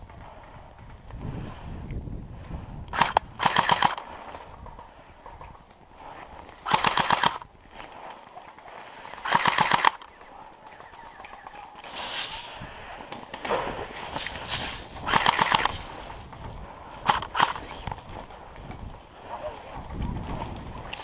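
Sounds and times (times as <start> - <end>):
airsoft gun rapid bursts: 3.0 - 4.0, 6.7 - 7.4, 9.2 - 10.0, 15.1 - 15.8, 17.0 - 17.6.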